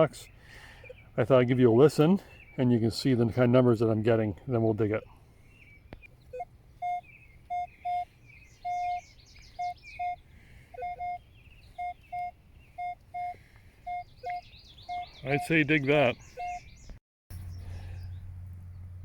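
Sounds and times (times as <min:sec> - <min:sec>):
birds chirping: 0:00.0 - 0:19.0
metal detector beeping: 0:06.3 - 0:16.7.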